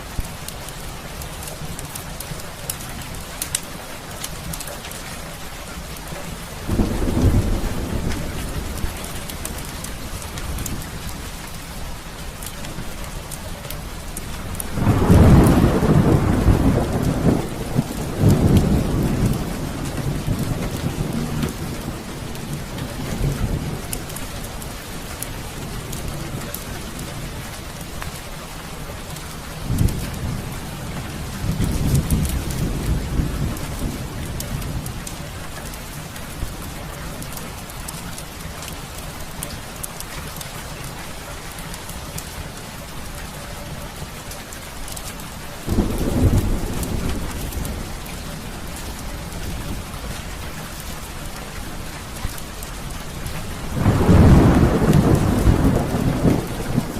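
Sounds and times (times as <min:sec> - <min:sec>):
heavy rain falling: 0:00.0 - 0:56.9
rolling thunder rumble: 0:06.4 - 0:13.1, 0:13.8 - 0:28.2, 0:29.0 - 0:37.3, 0:45.6 - 0:56.9
thunder clap: 0:06.7 - 0:10.9, 0:14.6 - 0:23.9, 0:45.7 - 0:49.9, 0:53.3 - 0:56.9.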